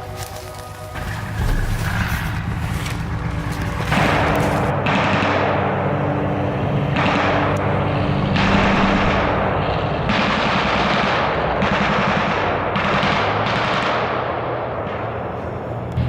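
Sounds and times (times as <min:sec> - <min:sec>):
steady low hum: 0:00.0 - 0:13.2
airsoft guns firing bursts: 0:10.1 - 0:15.3.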